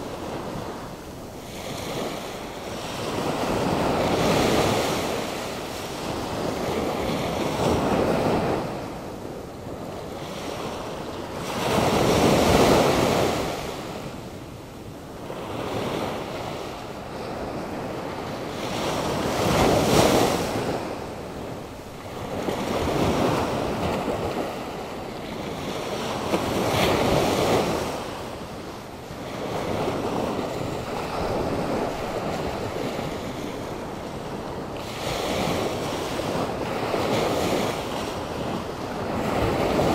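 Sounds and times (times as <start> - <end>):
ocean surf breaking: 15.3 - 39.9.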